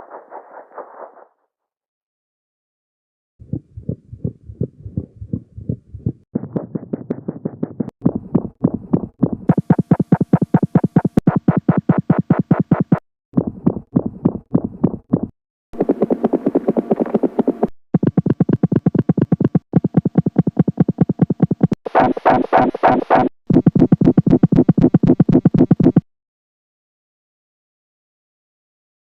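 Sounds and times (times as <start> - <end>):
heartbeat thumps: 3.4 - 16.4, 18.0 - 21.8, 23.2 - 26.0
heart murmur noise: 3.4 - 17.4, 18.0 - 21.8, 23.5 - 26.0.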